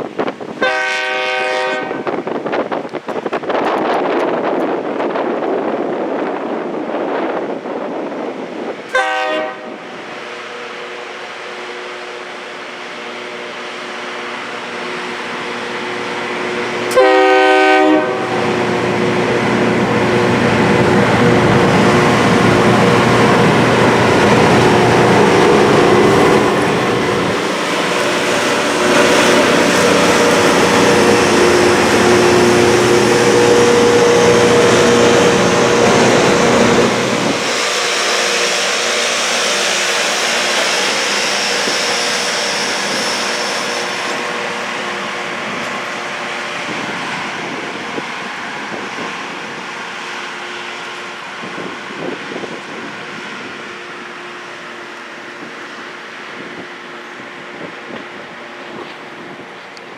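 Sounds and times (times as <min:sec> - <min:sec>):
rail grinder train grinding: 0:00.0 - 0:59.9
train horn blast: 0:00.6 - 0:02.2, 0:08.9 - 0:09.8, 0:16.9 - 0:18.6, 0:22.6 - 0:41.5.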